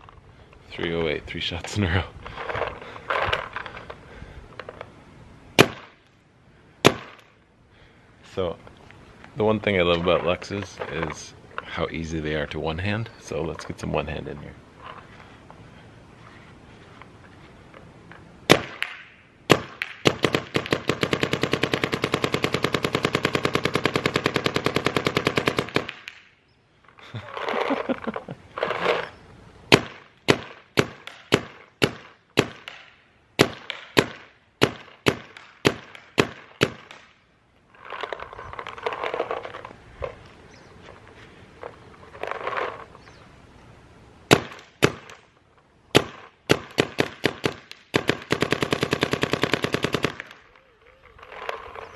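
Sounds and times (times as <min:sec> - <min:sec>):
paintball marker firing: 0:05.6 - 0:06.0, 0:06.8 - 0:07.3, 0:18.5 - 0:26.4, 0:29.7 - 0:37.2, 0:44.3 - 0:45.2, 0:45.9 - 0:50.6.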